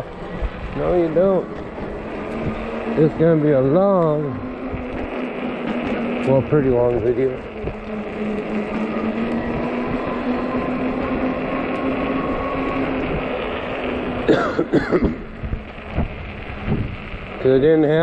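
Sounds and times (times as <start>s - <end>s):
wind and riding noise: 0.0s - 18.0s
person coughing: 14.3s - 15.3s.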